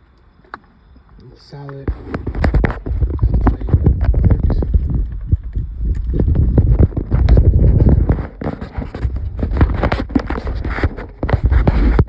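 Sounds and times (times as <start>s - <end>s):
handling noise of wires and connectors: 0.0s - 12.0s
heavy low rumble: 1.9s - 12.0s.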